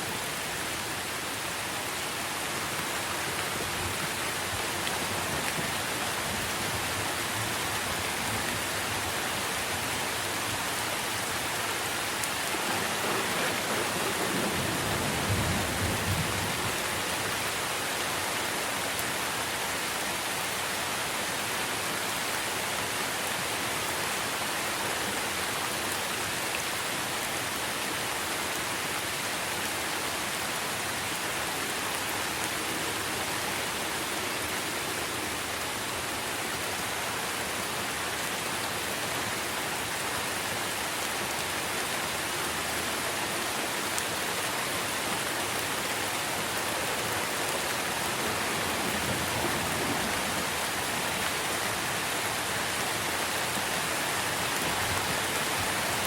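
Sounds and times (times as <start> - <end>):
heavy rain on leaves: 0.0 - 56.0
low rumble of thunder: 12.4 - 16.9, 47.8 - 51.3.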